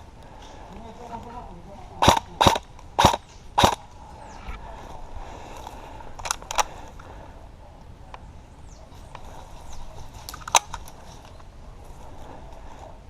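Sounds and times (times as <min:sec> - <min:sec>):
airsoft gun shots: 0:02.0 - 0:03.8.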